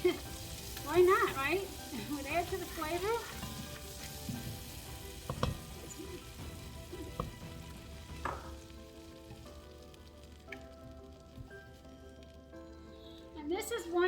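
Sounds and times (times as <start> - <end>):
onion sizzling in a pot: 0.0 - 14.0
utensil knocking against a pot: 5.2 - 5.7, 7.1 - 7.4, 8.2 - 8.6.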